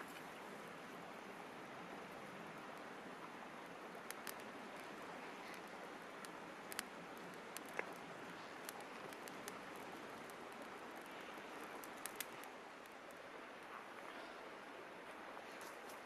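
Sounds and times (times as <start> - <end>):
wood fire crackling: 2.6 - 14.3.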